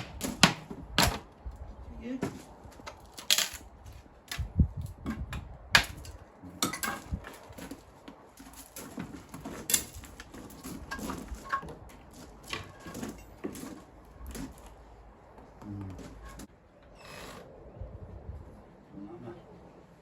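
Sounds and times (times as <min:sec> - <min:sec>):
stones and hand tools clinking: 0:02.3 - 0:14.8.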